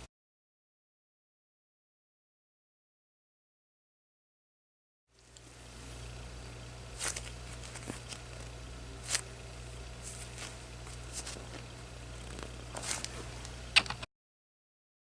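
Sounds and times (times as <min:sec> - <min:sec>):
low electrical hum: 0:05.1 - 0:14.1
foam toy rustling crackles: 0:06.9 - 0:13.5.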